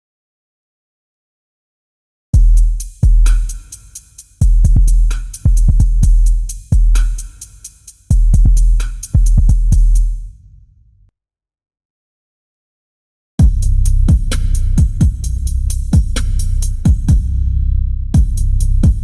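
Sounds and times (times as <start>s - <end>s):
deep kick drum booms: 2.4s - 3.5s, 4.4s - 7.2s, 8.1s - 10.2s, 13.4s - 19.0s
crisp hi-hat ticks: 2.6s - 10.2s.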